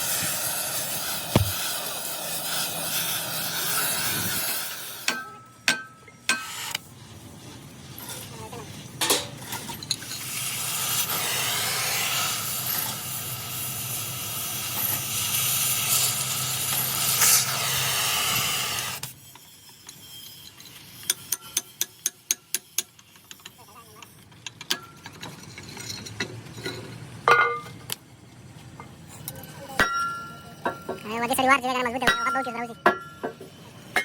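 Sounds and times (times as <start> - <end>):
sharp light taps: 1.4 - 1.6.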